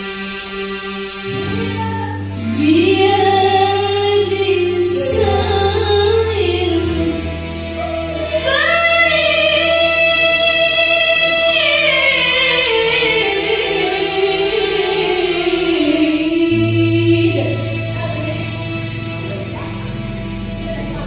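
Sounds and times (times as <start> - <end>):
low musical accompaniment: 0.0 - 21.0
woman singing: 1.6 - 18.4.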